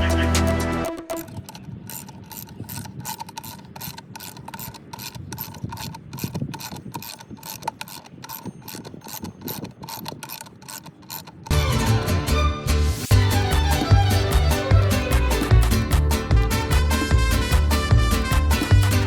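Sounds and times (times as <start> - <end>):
ratchet clicking: 1.1 - 11.6.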